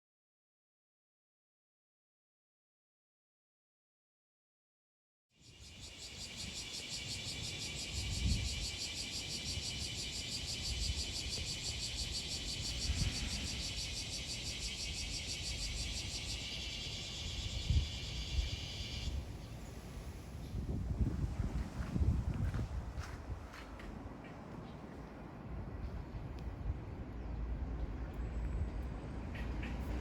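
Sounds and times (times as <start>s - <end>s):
insects pulsing drone: 5.4s - 20.6s
wind on microphone: 7.8s - 8.8s, 12.4s - 13.9s, 17.2s - 24.0s.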